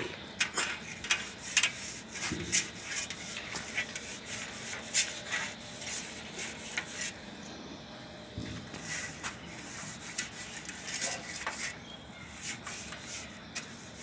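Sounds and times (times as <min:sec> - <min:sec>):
rubbing scraping sound: 0:00.4 - 0:07.2, 0:08.7 - 0:14.0.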